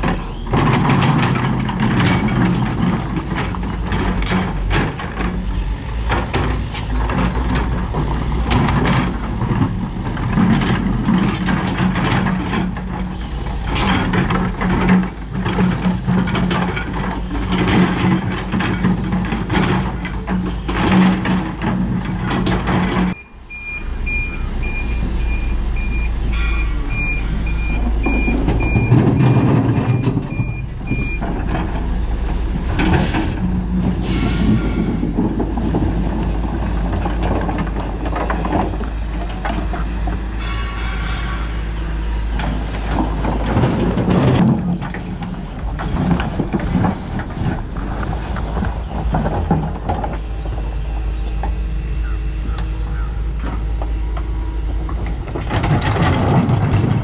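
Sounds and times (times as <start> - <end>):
heavy diesel machinery running: 0.0 - 57.0
reversing alarm beeping: 23.1 - 31.4.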